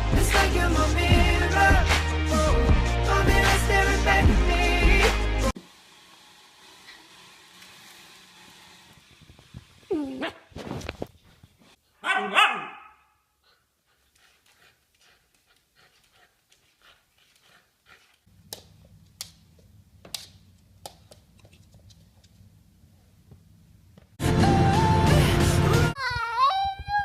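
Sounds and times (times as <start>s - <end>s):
dog barking: 12.0s - 13.2s.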